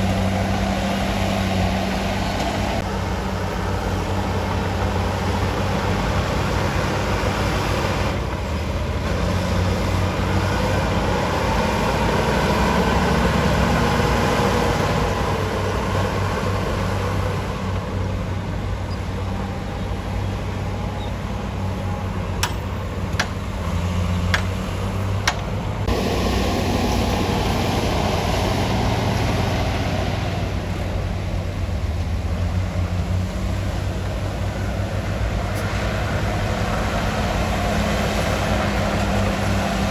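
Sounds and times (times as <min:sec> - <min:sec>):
heavy machinery diesel engine: 0:00.0 - 0:39.9
sharp metallic knocks: 0:22.4 - 0:23.4, 0:24.3 - 0:24.6.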